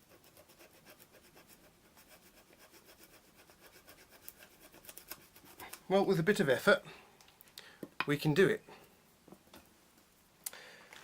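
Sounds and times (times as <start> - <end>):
knife blade sawing through rope: 0.0 - 5.6.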